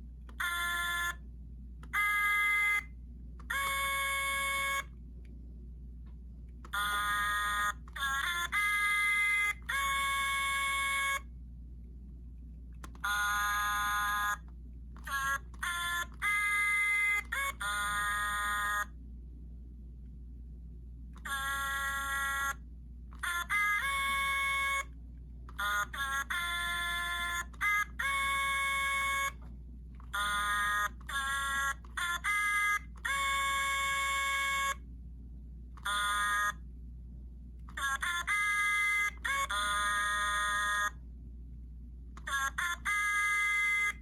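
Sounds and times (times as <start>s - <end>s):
steady low hum: 0.0s - 44.0s
toy electronic singing voice: 0.4s - 1.2s, 1.8s - 2.9s, 3.5s - 4.9s, 6.7s - 11.2s, 12.9s - 14.4s, 15.0s - 18.9s, 21.2s - 22.6s, 23.2s - 24.9s, 25.6s - 29.4s, 30.1s - 34.8s, 35.8s - 36.6s, 37.7s - 41.0s, 42.2s - 44.0s.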